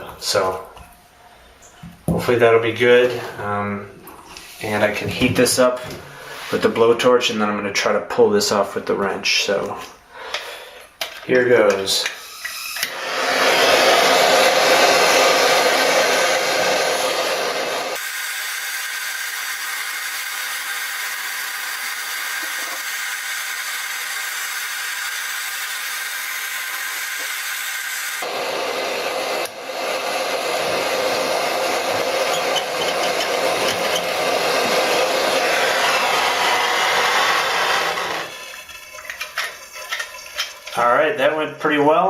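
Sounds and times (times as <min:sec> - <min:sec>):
blowtorch flame hissing: 0:12.2 - 0:40.8.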